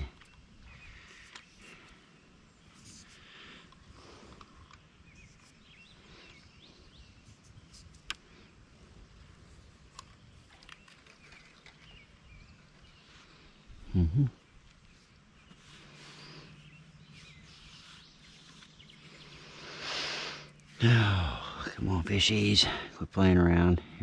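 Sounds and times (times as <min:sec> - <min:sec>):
bird chirps: 0:09.5 - 0:22.4.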